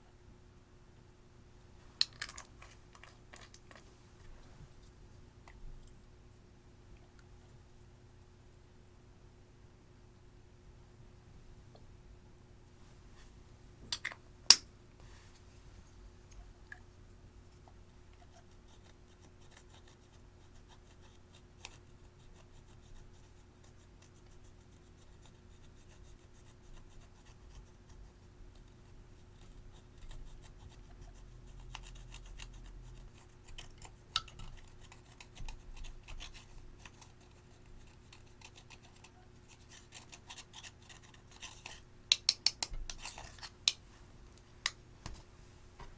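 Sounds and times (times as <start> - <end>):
low steady hum: 0.0 - 45.9
small handling sounds: 1.8 - 6.0, 33.5 - 45.9.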